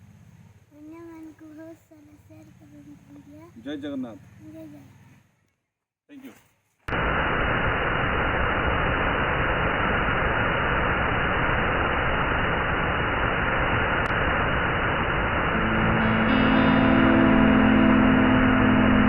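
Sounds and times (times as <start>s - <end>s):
music with sustained tones: 15.5s - 19.0s.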